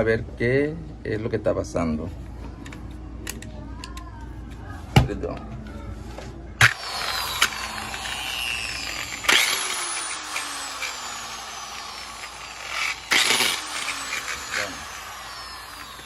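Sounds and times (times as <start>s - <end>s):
electric polisher whining: 6.6s - 16.0s.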